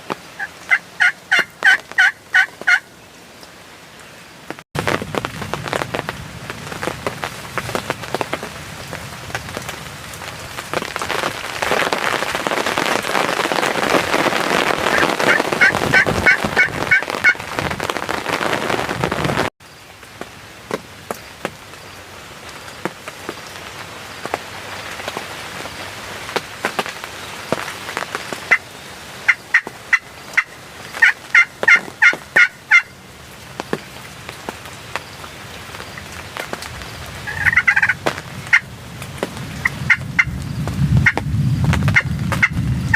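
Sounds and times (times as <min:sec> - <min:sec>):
turkey gobbling: 0:00.4 - 0:02.9, 0:14.9 - 0:17.4, 0:29.3 - 0:32.9, 0:37.2 - 0:38.7, 0:39.6 - 0:40.3.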